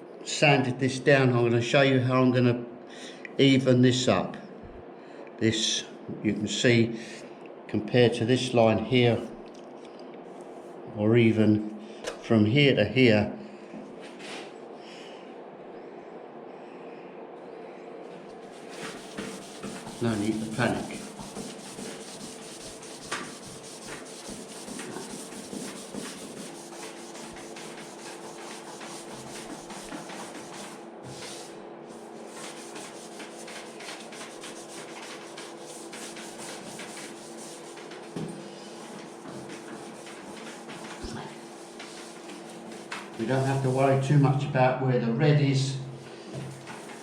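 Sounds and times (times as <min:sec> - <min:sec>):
sandpaper rubbing on panel: 0:18.5 - 0:44.1, 0:46.2 - 0:47.0.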